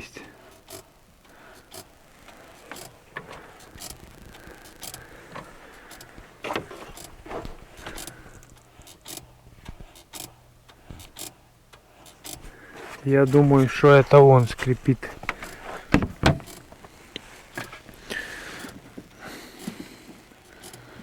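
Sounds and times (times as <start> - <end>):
low hum: 0.0 - 9.8
clutch pedal squeaking: 0.0 - 21.0
irregular clicks: 0.2 - 21.0.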